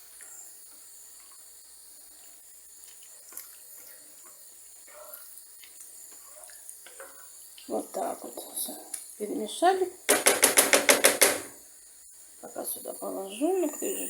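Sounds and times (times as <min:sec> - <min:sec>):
noodles squelching in gravy: 0:00.0 - 0:09.3
faint steady hiss: 0:00.0 - 0:14.0
utensil tapping and scraping pan: 0:10.1 - 0:11.5.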